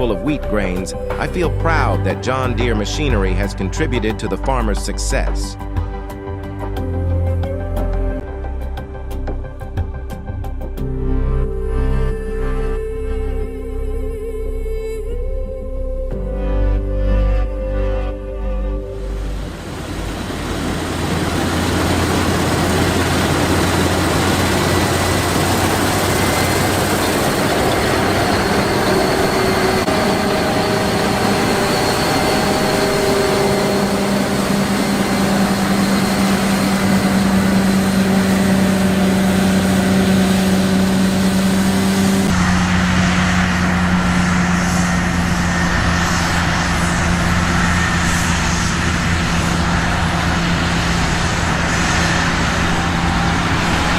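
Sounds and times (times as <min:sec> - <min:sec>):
heavy diesel engine running: 0:00.0 - 0:07.0, 0:18.9 - 0:53.9.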